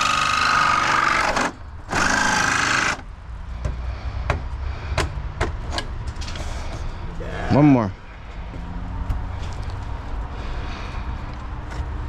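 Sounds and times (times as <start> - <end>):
power saw whining: 0.0 - 3.0.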